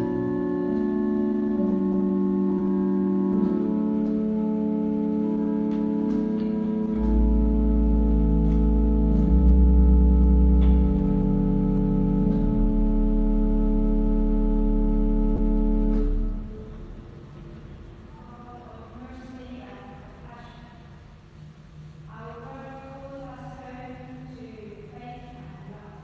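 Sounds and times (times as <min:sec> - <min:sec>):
deep organ pedal bass: 0:00.0 - 0:17.4
organ playing sustained chords: 0:00.0 - 0:18.2.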